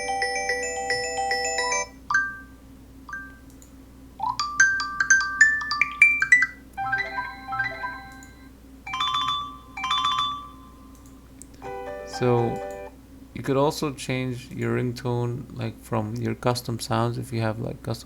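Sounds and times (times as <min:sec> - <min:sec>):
electronic ringtone melodies: 0:00.0 - 0:03.4, 0:04.2 - 0:10.9.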